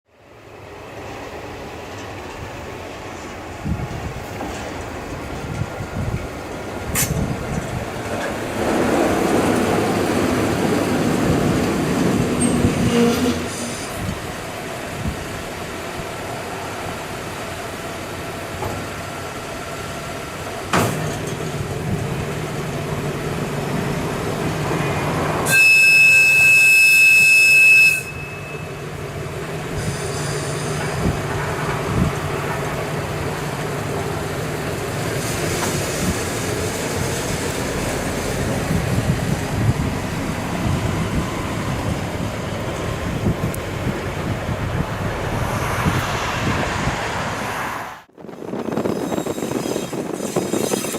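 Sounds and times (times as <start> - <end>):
rail motor car engine running: 0.1 - 47.4
high whistle blast: 25.4 - 28.7.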